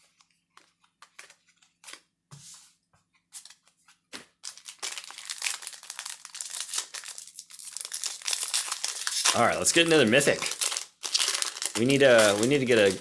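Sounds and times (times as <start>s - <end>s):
cards rustling and clicking: 0.1s - 2.1s, 7.9s - 13.0s
foil wrapper tearing and crinkling: 4.4s - 13.0s.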